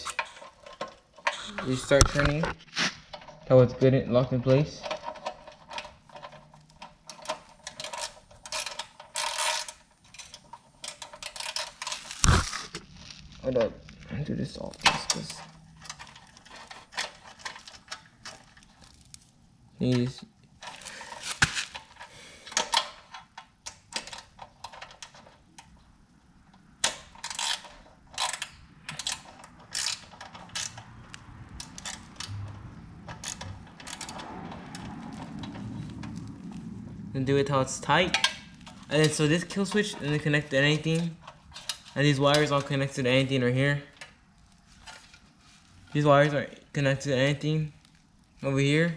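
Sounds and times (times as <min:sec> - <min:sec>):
bolt clicking and rattling: 0:04.5 - 0:12.4, 0:14.7 - 0:19.1, 0:19.9 - 0:25.9, 0:26.5 - 0:36.4.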